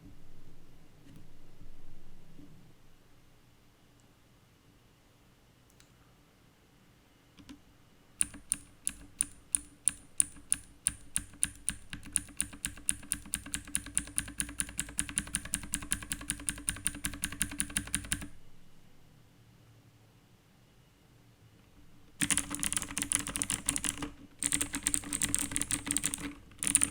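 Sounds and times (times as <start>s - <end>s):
clicky keyboard typing: 8.2s - 18.3s, 22.2s - 26.9s.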